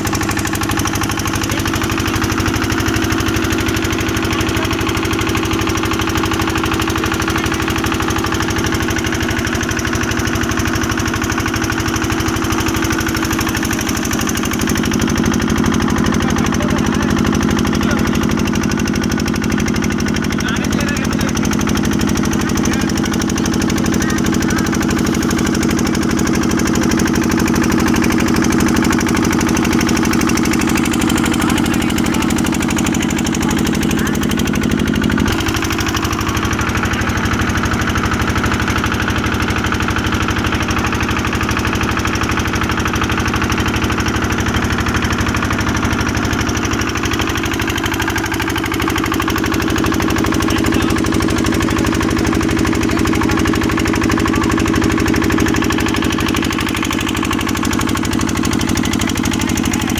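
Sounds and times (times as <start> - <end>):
motorboat engine running: 0.0 - 59.9.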